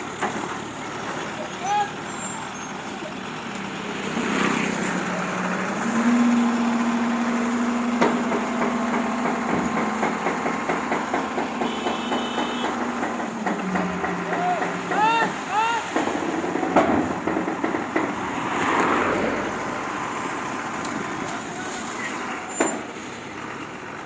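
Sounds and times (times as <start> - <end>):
diesel engine revving: 0.0 - 24.0
rapid even clatter: 12.4 - 19.6.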